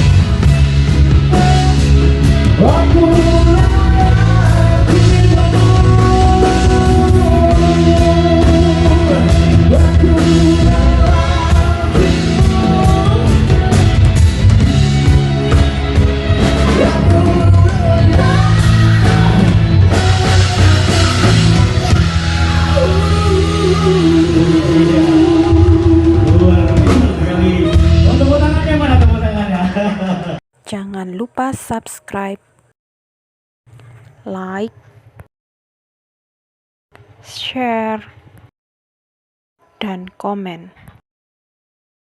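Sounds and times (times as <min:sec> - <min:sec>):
loud rock music: 0:00.0 - 0:30.4.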